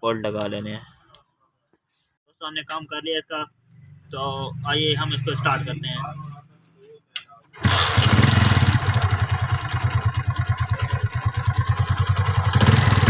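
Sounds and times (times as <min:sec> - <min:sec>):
motorcycle engine starting and running: 0:07.6 - 0:13.0.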